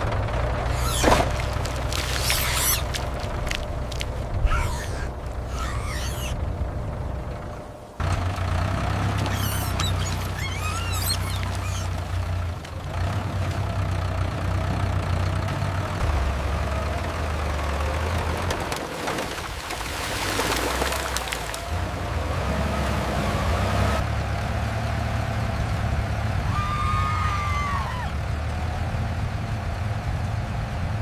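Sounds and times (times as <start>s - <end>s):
tractor engine running: 0.0s - 26.5s
high chirping glides: 0.7s - 1.2s, 1.9s - 3.1s, 4.4s - 6.4s, 9.3s - 11.9s.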